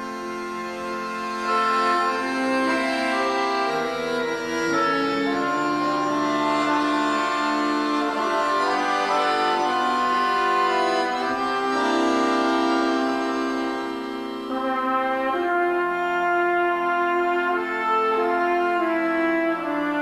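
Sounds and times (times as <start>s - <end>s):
accordion playing a tune: 0.0s - 20.0s.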